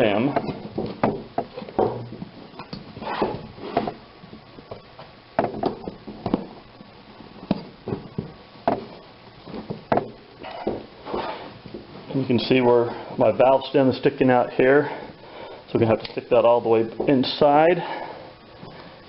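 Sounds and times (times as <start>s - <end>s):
rubber knocking and rubbing: 0.3s - 6.6s, 7.4s - 11.9s.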